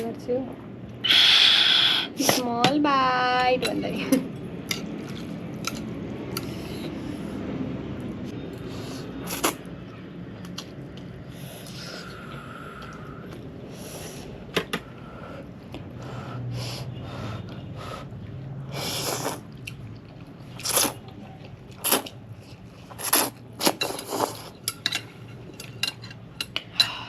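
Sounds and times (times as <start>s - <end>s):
chewing with wet mouth noises: 4.4s - 13.7s, 17.2s - 26.7s.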